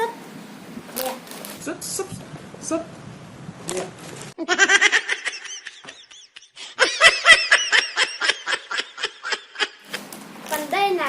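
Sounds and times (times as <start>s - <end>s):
high-pitched giggling laughter: 4.4s - 9.8s.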